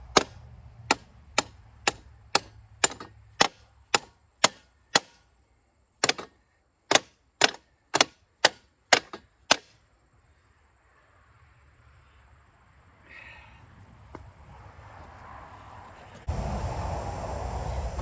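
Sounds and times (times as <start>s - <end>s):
hammer blows ringing: 0.1s - 5.2s.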